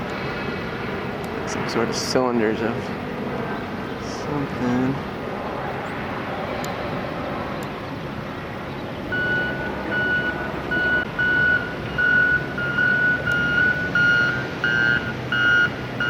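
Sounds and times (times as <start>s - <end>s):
steady background rumble: 0.0s - 16.0s
second reversing beeper: 9.1s - 15.8s
vehicle reversing alarm beeping: 9.1s - 16.0s.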